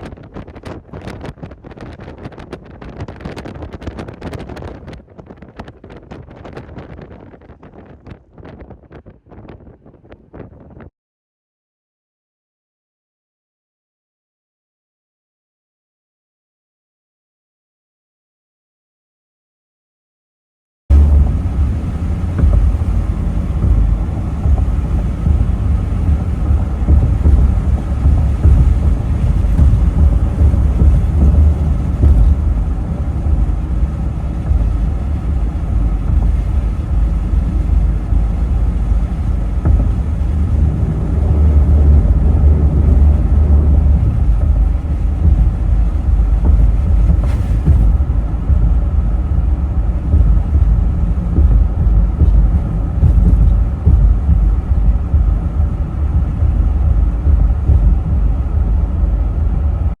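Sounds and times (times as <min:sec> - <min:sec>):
car interior road and engine rumble: 0:20.9 - 1:00.0.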